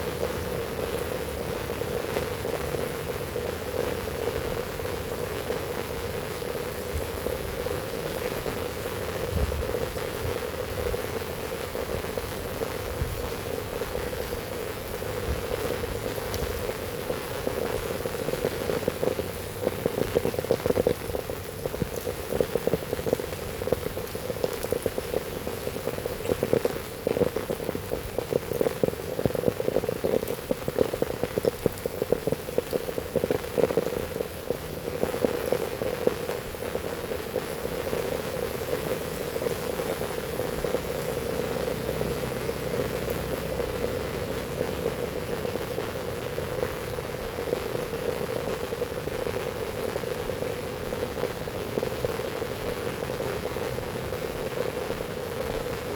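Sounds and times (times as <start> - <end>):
heavy rain falling: 0.0 - 55.9.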